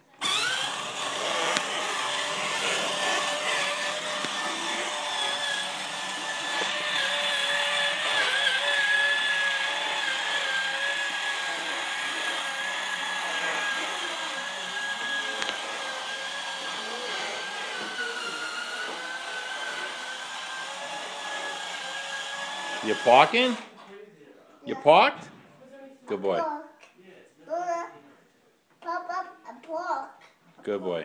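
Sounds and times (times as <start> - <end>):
toy vehicle electric motor whining: 0.1 - 23.7.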